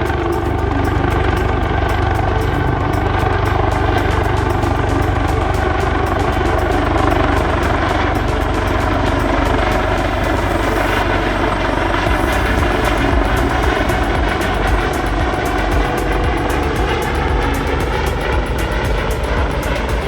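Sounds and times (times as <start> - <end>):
aircraft engine running: 0.0 - 20.0.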